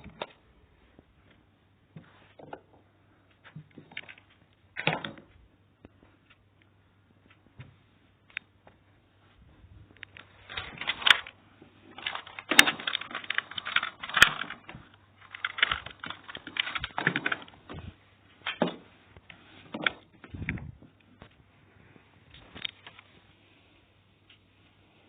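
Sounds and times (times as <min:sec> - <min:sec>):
plastic parts clicking and rattling: 0:03.4 - 0:05.4, 0:10.0 - 0:21.3, 0:22.3 - 0:23.1.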